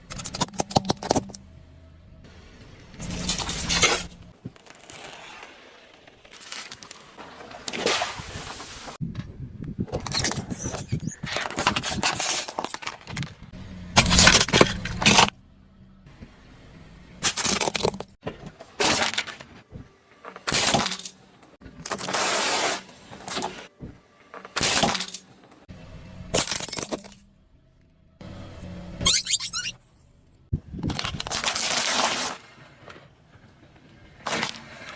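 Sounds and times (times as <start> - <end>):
objects crunching and breaking: 3.0 - 8.6, 30.8 - 32.6.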